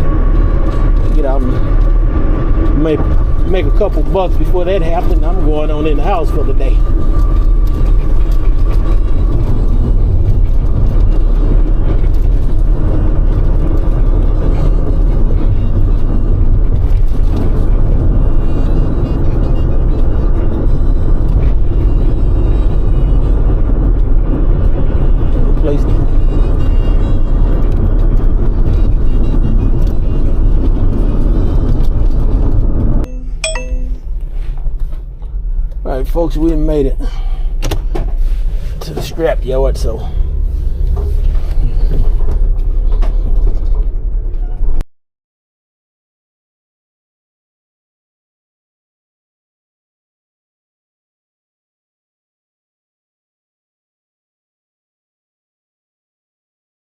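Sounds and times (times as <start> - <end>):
van engine and road noise: 0.0 - 44.8
dashboard chime dinging: 33.1 - 34.2.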